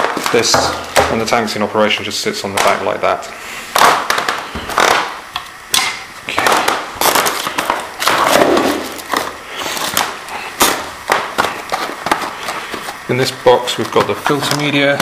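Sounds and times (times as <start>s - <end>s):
packaging crinkling and rustling: 3.8s - 5.2s, 6.3s - 15.0s.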